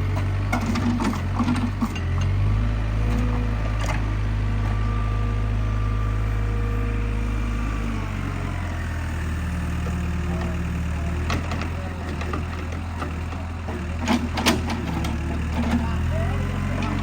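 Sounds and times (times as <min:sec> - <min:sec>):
excavator diesel engine running: 0:00.0 - 0:17.0.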